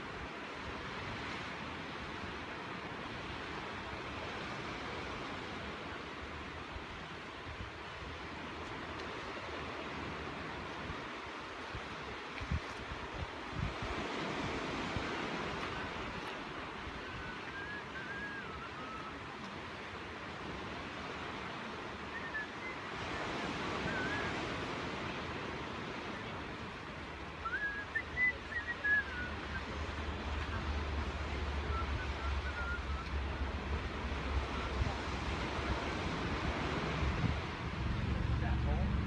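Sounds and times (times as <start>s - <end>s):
surf: 0.0s - 39.0s
wind rumble on microphone: 0.0s - 39.0s.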